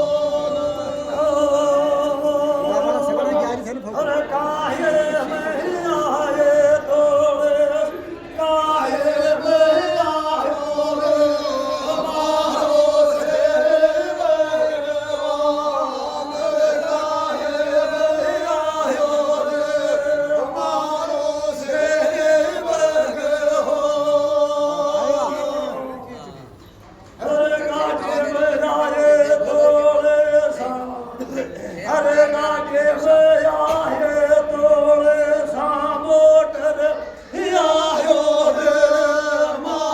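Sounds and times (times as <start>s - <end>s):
man singing devotional song: 0.0s - 39.9s.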